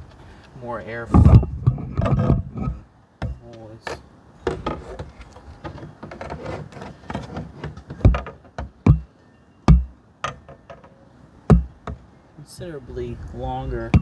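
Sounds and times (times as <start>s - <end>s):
heavy knocks of hard plastic: 7.1s - 9.1s, 9.7s - 10.4s, 11.5s - 12.1s, 13.8s - 14.0s.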